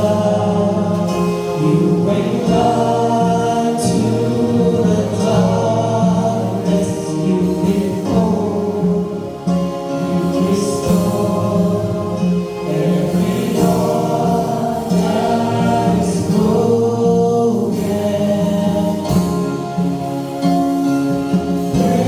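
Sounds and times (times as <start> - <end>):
choir singing gospel: 0.0 - 22.0.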